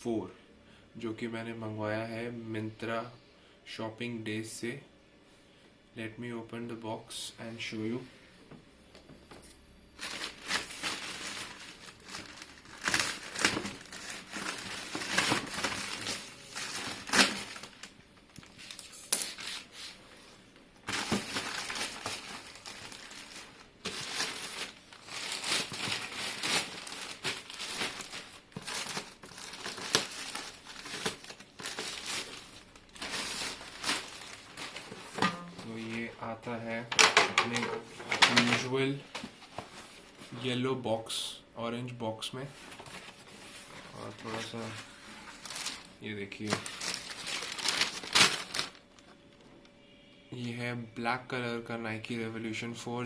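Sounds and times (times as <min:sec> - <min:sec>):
plastic and paper crinkling: 0:10.0 - 0:36.2, 0:37.3 - 0:40.4, 0:42.5 - 0:49.2.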